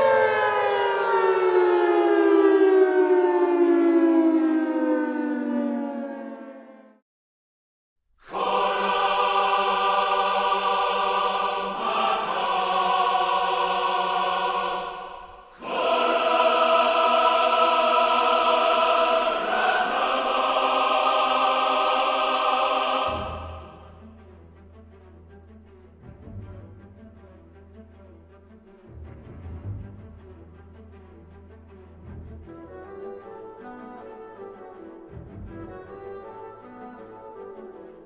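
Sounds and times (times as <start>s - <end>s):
choir-like music in held chords: 8.2s - 38.0s.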